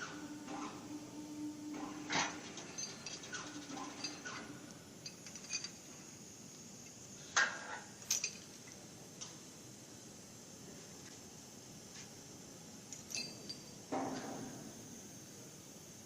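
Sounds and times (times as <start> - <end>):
faint steady hum: 0.0 - 16.0
metallic clinks and knocks: 2.4 - 5.9, 8.0 - 8.7, 12.9 - 14.4.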